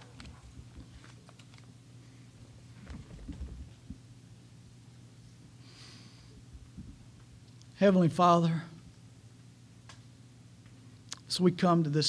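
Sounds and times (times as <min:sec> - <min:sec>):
steady low hum: 0:00.0 - 0:12.0
faint low thumps and rustles: 0:02.7 - 0:04.1.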